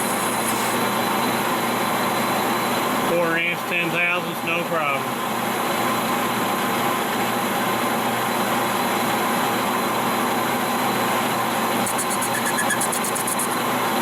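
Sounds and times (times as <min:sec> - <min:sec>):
lathe cutting hiss: 0:00.0 - 0:01.0, 0:11.8 - 0:13.8
metal lathe humming: 0:00.0 - 0:01.0, 0:11.8 - 0:14.0.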